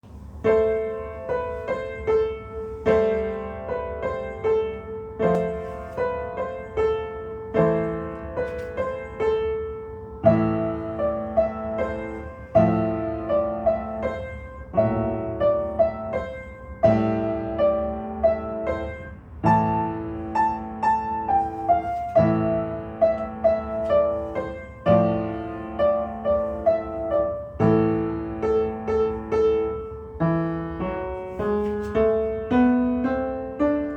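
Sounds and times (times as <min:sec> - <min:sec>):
piano playing carol: 0:00.0 - 0:33.9.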